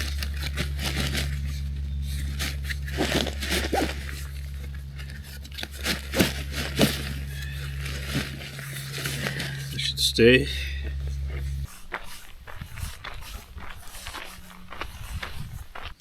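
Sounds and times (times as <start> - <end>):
gear and strap clicks: 0.0 - 10.0
nylon backpack rustling: 0.0 - 16.0.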